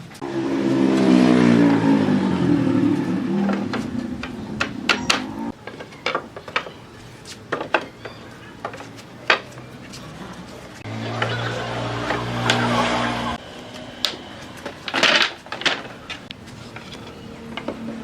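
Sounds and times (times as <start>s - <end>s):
wood knocking and tapping: 3.4s - 6.8s
electric power tool humming: 10.8s - 15.0s.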